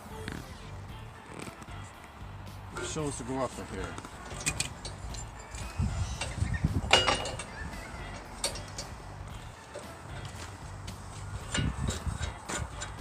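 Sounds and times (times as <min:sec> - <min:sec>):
sharp metallic clink: 0:04.2 - 0:09.0.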